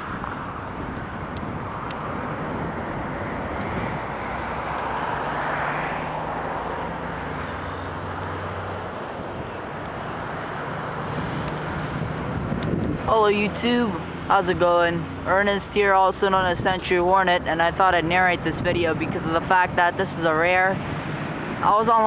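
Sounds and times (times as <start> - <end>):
jet engine roar: 0.0 - 14.6.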